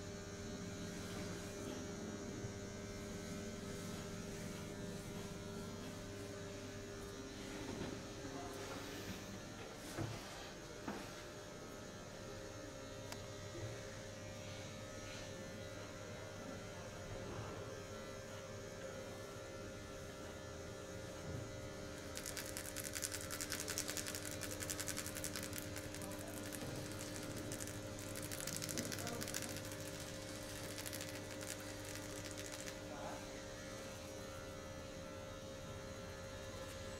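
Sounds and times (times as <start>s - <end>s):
electrical hum: 0.0s - 36.9s
fast scratchy rubbing: 22.0s - 32.8s.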